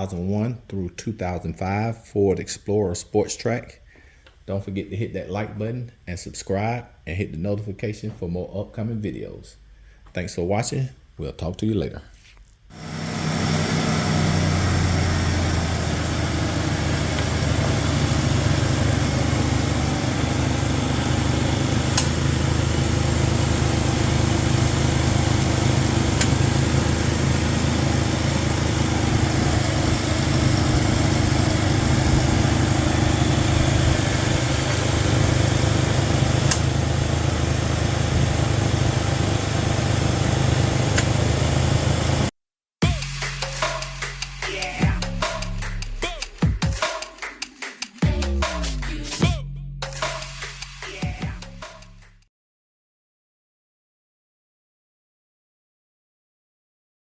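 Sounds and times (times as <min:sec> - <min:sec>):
car engine idling: 0:12.7 - 0:42.3.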